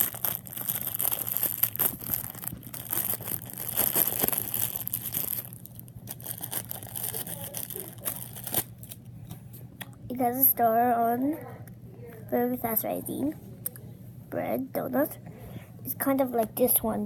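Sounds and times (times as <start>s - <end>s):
foam toys rustling and crinkling: 0.0s - 9.0s.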